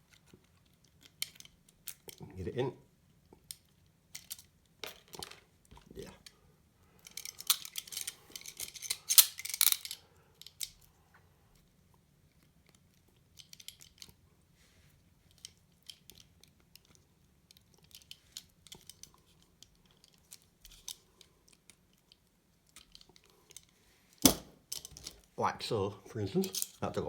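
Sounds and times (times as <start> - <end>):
handcuff ratchet rattle: 7.0 - 10.8, 26.4 - 26.8.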